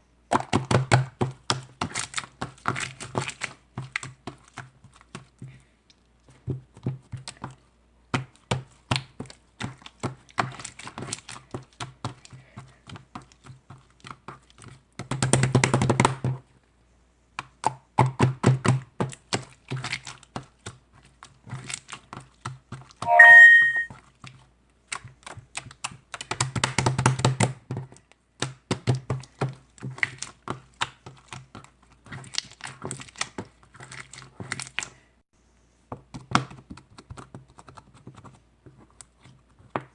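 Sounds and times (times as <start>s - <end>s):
keyboard typing: 23.0s - 23.9s
short electronic tone: 23.0s - 23.9s.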